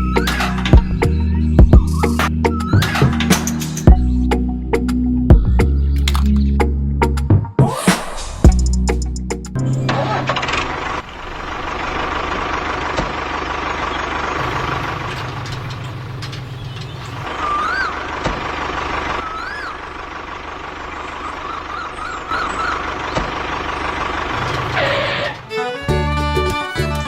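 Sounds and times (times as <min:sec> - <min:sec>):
warbling chirps: 0:17.2 - 0:24.0.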